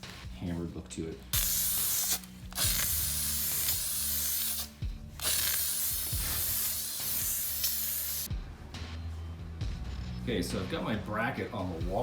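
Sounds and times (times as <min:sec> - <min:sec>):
spray paint can hissing: 0:01.4 - 0:08.3.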